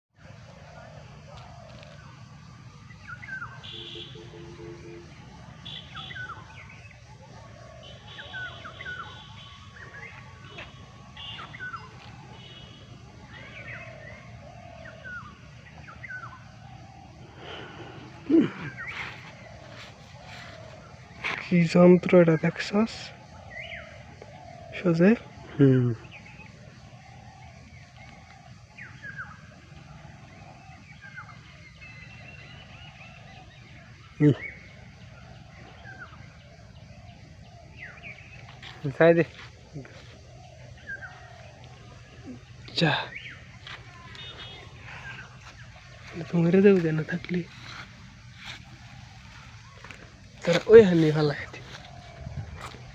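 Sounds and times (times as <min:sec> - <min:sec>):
birds chirping: 0:00.2 - 0:52.9
steady low hum: 0:25.3 - 0:52.9.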